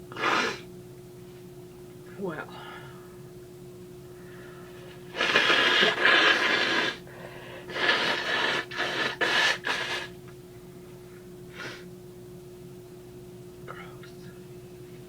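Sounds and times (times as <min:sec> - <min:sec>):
breathy bursts before sneeze: 0:00.1 - 0:00.7.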